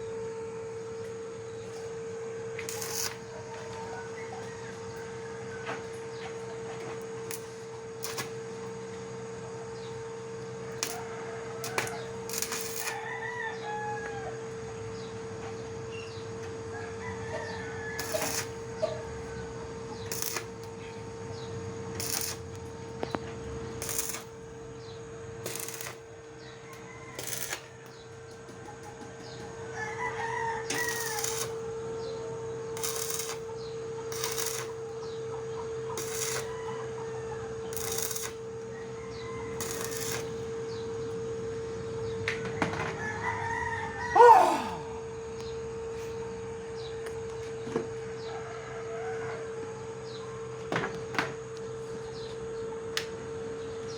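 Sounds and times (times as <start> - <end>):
steady hum: 0.0 - 4.1
rooster crowing: 3.5 - 5.9, 10.9 - 14.6, 16.7 - 20.4, 26.4 - 27.9, 29.5 - 31.5, 36.1 - 40.2, 42.4 - 45.2, 48.4 - 49.5.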